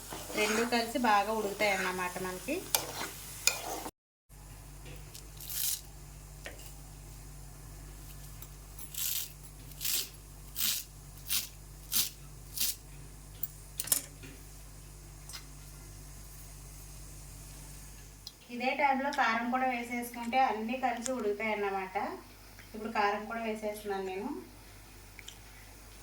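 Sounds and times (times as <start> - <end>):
spoon scraping in a pan: 0.0 - 3.9.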